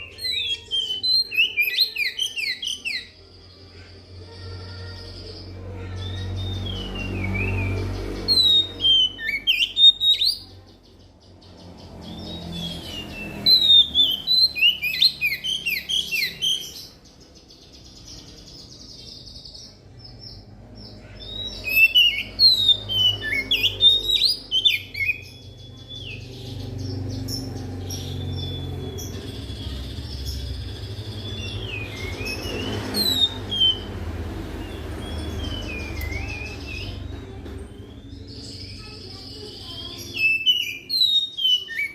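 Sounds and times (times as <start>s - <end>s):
bird singing whistles: 6.6s - 10.4s, 12.1s - 16.8s, 21.3s - 26.2s, 31.2s - 33.9s, 40.1s - 41.9s.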